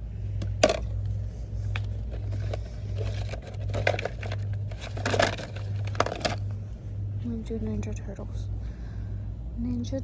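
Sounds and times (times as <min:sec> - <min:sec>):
steady low hum: 0:00.0 - 0:10.0
store items rustling and clattering: 0:00.4 - 0:07.8.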